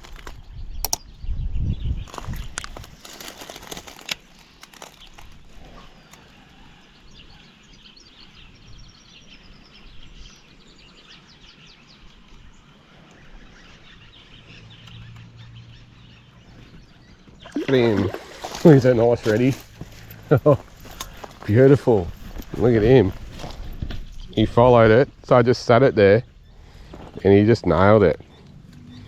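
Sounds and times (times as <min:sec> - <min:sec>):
sharp clicks: 0:00.0 - 0:01.2
birds chirping: 0:00.0 - 0:29.0.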